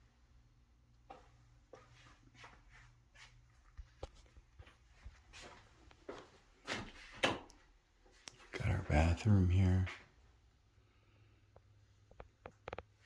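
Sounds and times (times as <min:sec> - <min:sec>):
faint footsteps: 0:01.0 - 0:07.2.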